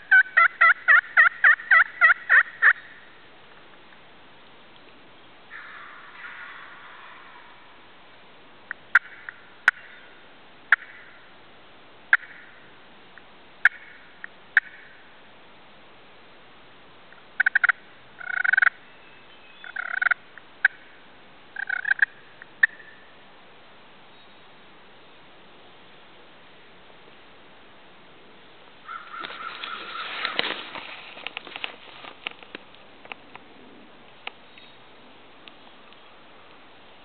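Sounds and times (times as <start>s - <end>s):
turkeys gobbling: 0.0s - 2.9s, 8.9s - 10.0s, 17.4s - 18.8s, 19.6s - 20.8s, 21.6s - 23.0s, 28.9s - 30.6s.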